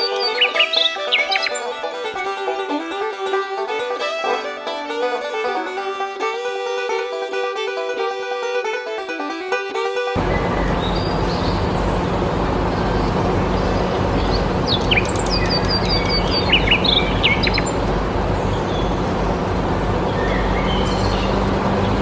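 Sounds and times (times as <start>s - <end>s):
birds chirping: 0.0s - 2.7s, 10.2s - 22.0s
low hum: 10.2s - 22.0s.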